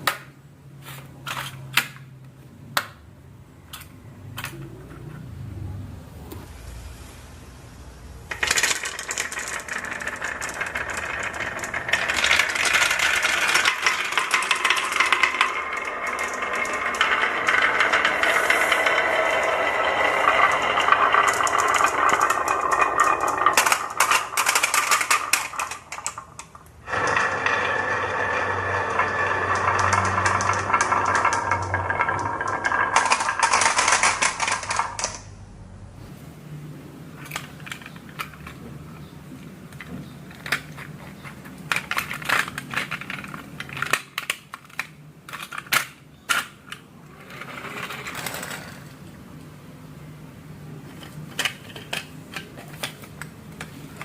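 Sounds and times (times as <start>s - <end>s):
marbles rattling down tracks: 8.3s - 35.3s, 47.1s - 49.0s.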